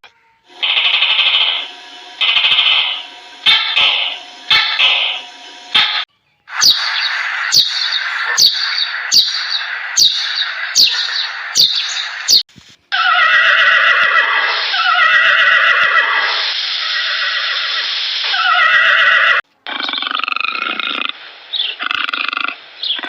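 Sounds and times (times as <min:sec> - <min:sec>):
long wavering animal call: 0:00.5 - 0:05.2
harsh hissing animal calls: 0:00.5 - 0:23.0.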